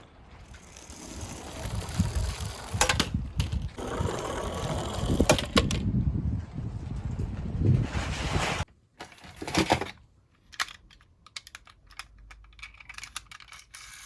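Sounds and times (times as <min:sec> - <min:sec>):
toy cars rolling and rattling: 0:00.4 - 0:05.8, 0:09.0 - 0:14.0.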